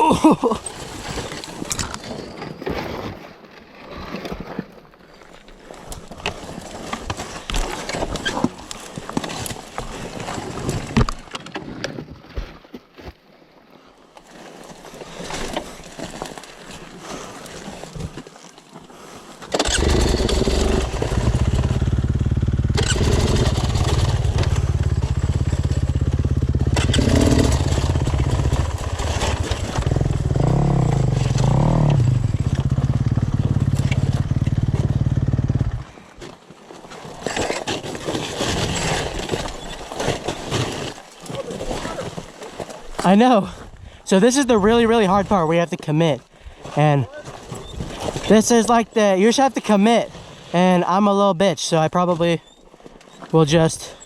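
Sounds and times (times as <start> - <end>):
dirt bike engine running: 19.6 - 35.9.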